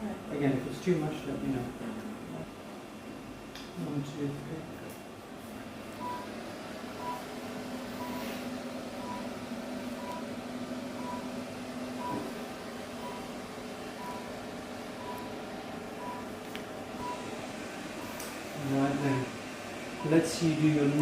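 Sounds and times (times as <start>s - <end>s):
steady low hum: 0.0s - 21.0s
therapy laser unit beeping: 6.0s - 6.4s, 7.0s - 11.4s, 12.0s - 21.0s.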